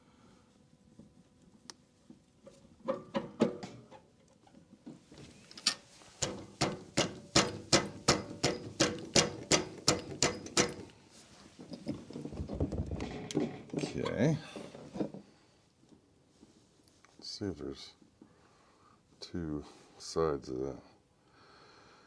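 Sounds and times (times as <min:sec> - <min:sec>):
metal-on-metal taps: 0:05.6 - 0:11.0.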